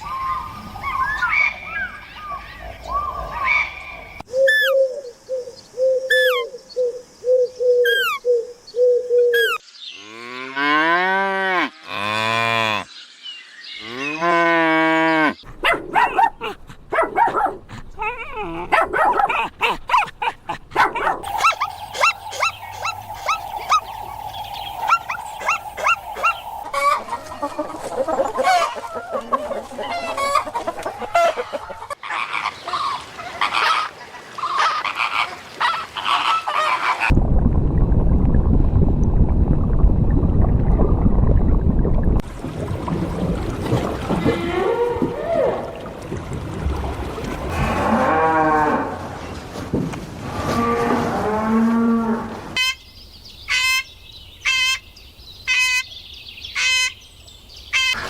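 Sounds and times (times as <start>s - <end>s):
farm animal calls: 24.7s - 37.1s.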